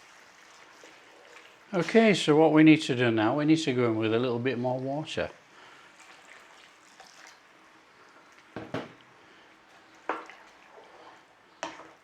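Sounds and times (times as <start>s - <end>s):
wet squelching sauce stirring: 5.8s - 12.0s.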